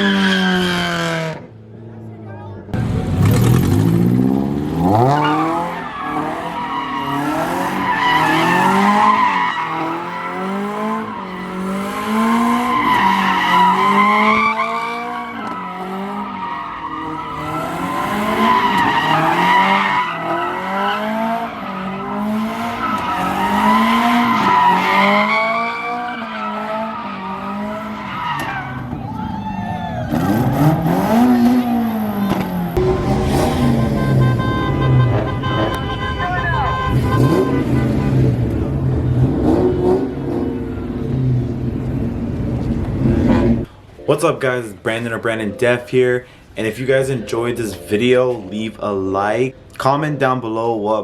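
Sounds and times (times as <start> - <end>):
tires squealing on pavement: 0.0 - 1.4, 3.0 - 41.9
car engine revving: 2.7 - 29.0, 30.1 - 43.7.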